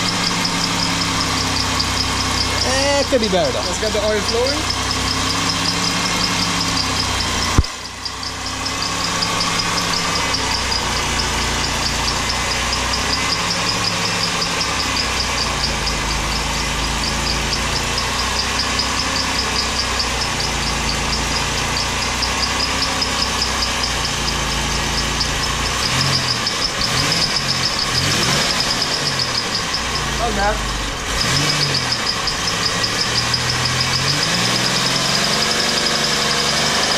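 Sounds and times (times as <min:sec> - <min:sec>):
car engine idling with ticking knock: 0:00.0 - 0:36.9
sharp click: 0:07.5 - 0:07.8.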